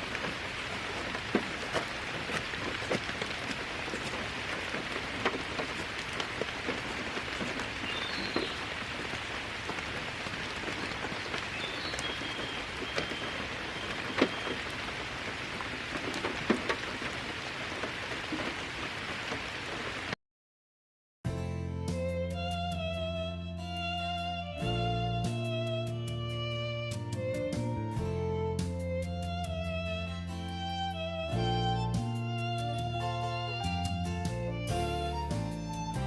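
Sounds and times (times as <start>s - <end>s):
raindrops ticking on surfaces: 0.0s - 20.2s, 28.5s - 36.0s
steady rain falling: 0.0s - 20.2s, 23.7s - 36.0s.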